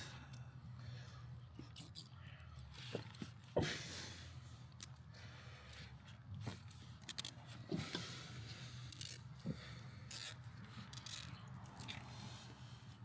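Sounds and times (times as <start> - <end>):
zip ties rasping: 8.9 - 9.3, 10.1 - 12.1.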